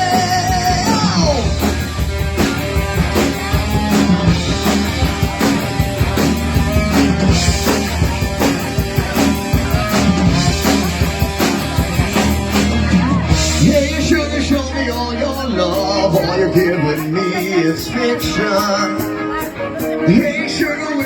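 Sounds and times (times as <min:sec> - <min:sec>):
bass guitar: 0:00.0 - 0:21.0
drum kit beat: 0:00.0 - 0:21.0
electric guitar: 0:00.0 - 0:21.0.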